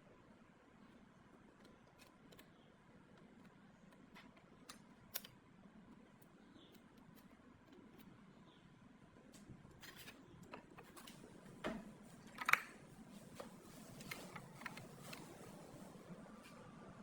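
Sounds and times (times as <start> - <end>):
small parts clicking and tapping: 1.4 - 8.1.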